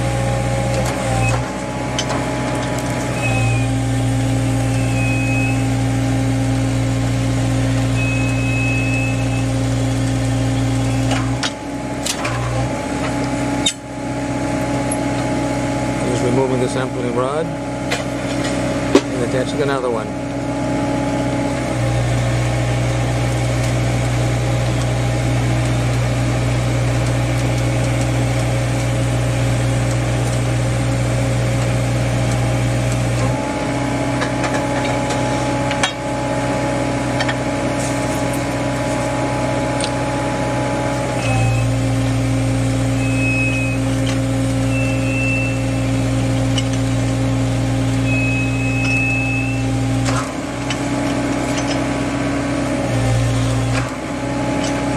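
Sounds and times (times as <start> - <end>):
drill rig engine running: 0.0 - 54.9
short high squeals: 3.2 - 5.9, 7.9 - 9.6, 42.8 - 46.1, 48.0 - 50.2.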